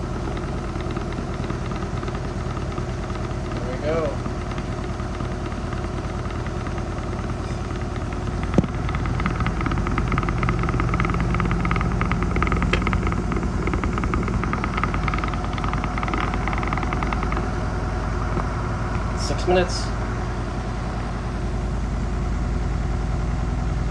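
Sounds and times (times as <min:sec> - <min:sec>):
washing machine rattling: 0:00.0 - 0:21.6
washing machine spinning: 0:00.0 - 0:23.9.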